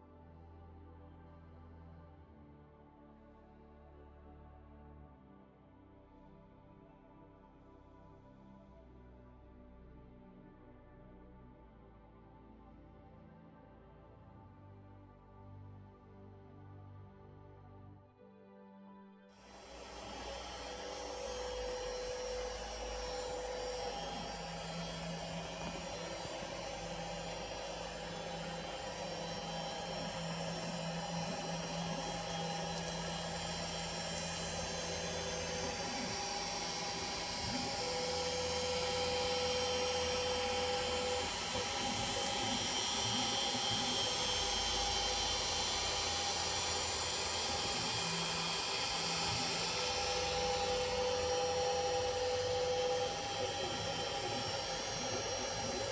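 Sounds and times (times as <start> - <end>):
cnc router whine and hiss: 19.4 - 55.9
stepper motor tones: 19.4 - 55.9.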